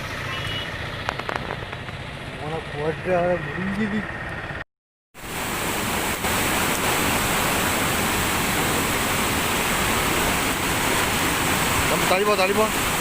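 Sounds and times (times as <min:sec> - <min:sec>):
floodwater rushing: 0:05.2 - 0:13.0.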